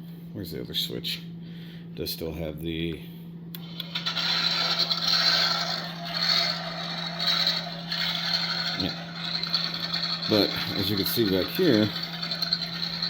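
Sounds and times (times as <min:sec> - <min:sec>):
motor driving plastic gears: 0:03.6 - 0:13.0.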